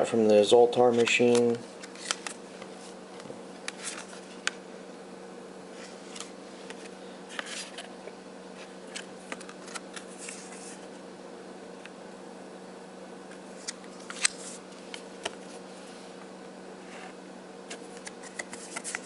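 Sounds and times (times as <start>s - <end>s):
steady low hum: 0.0s - 19.0s
paper and plastic handling clicks: 1.0s - 2.4s, 8.9s - 10.4s, 17.7s - 19.0s.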